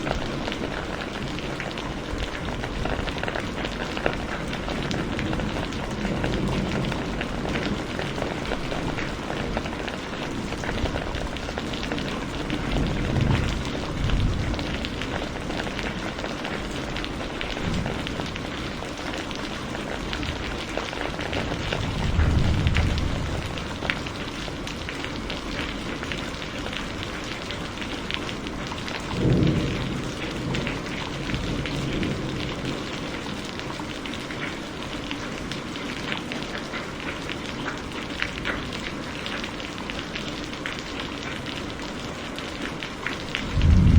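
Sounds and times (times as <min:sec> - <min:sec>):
low rumbles of thunder: 0:00.0 - 0:33.6, 0:43.2 - 0:43.9
heavy rain falling: 0:00.0 - 0:43.9.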